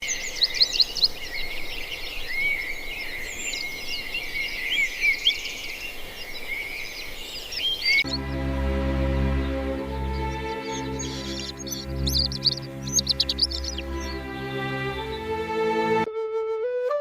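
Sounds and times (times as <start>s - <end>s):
small birds chirping: 0.0s - 16.0s
music with sustained notes: 8.0s - 17.0s.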